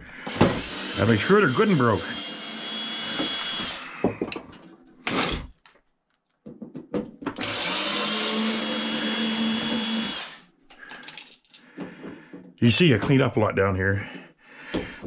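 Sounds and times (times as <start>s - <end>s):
power drill running: 0.2s - 3.9s, 7.4s - 10.5s.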